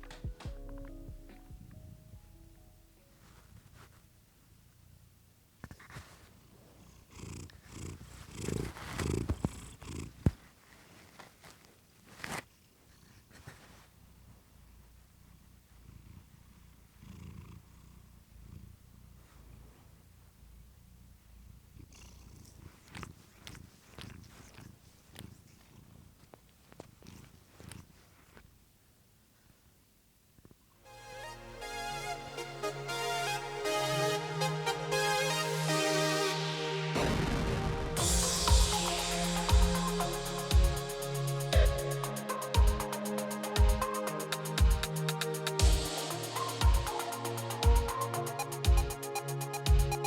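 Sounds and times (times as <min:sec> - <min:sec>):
soft clicks and rustles: 0:00.0 - 0:15.8, 0:22.4 - 0:28.8
cat purring: 0:00.0 - 0:30.8.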